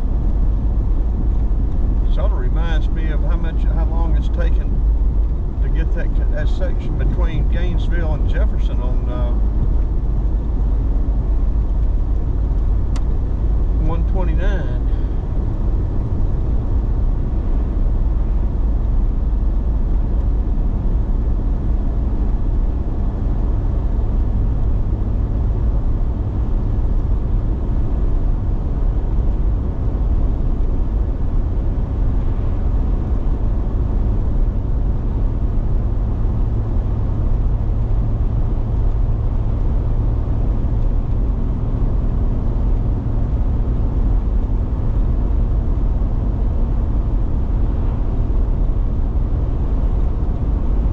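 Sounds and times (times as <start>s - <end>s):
car road and engine rumble: 0.0s - 50.9s.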